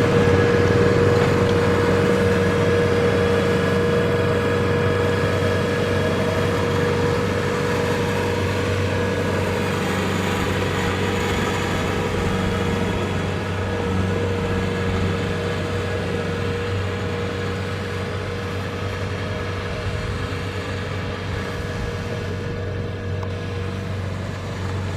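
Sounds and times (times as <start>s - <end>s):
combine harvester engine drone: 0.0s - 24.9s.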